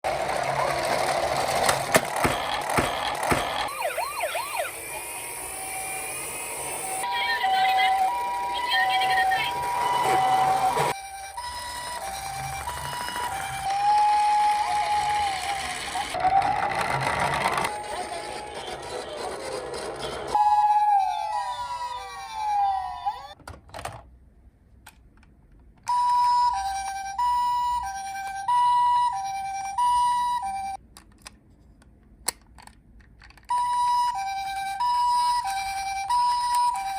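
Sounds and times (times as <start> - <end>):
toy car rattling: 0.1 - 3.7, 11.7 - 21.0
toy electronic siren: 2.4 - 16.9, 17.5 - 23.4, 25.9 - 30.8, 33.5 - 36.9.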